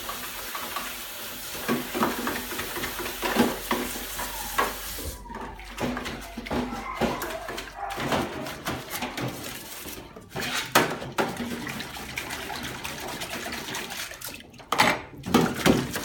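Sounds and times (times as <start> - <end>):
water splashing in a sink: 0.0 - 16.0
dishes clattering: 1.6 - 11.9, 14.7 - 16.0.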